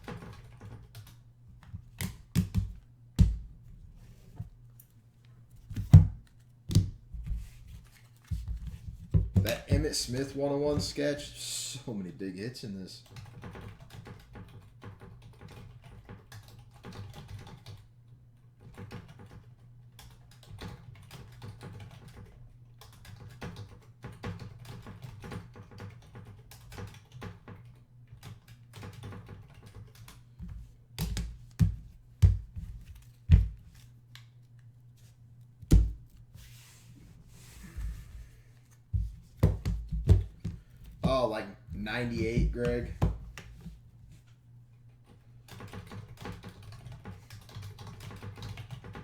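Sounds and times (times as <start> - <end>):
keyboard typing: 0.0 - 1.2, 13.0 - 17.8, 18.6 - 33.6, 45.5 - 49.0.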